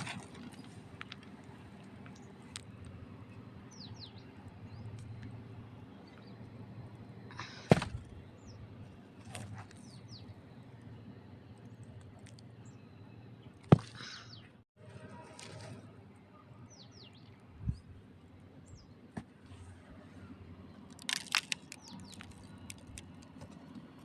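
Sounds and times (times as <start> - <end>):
clay pot pieces cracking: 20.8 - 23.4.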